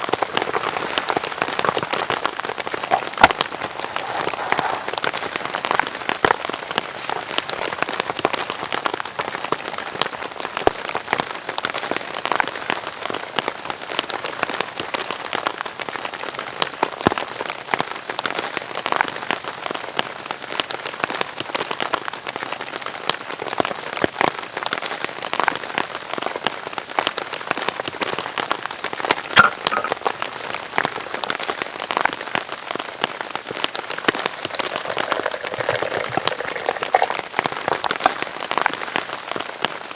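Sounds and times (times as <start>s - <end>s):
heavy rain falling: 0.0s - 18.8s
loud single drips: 29.3s - 30.0s.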